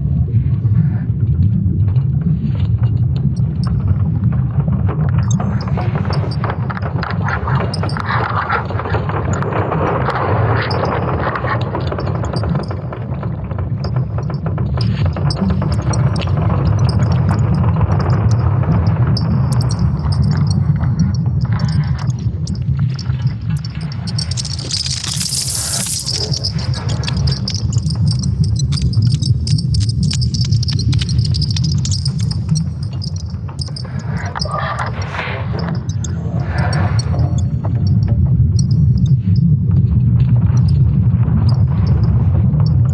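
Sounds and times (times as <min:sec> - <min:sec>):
deep steady rumble: 0:00.0 - 0:42.9
dense crackling and clicking: 0:02.8 - 0:39.1
jangly chime-like high ringing: 0:22.6 - 0:34.6.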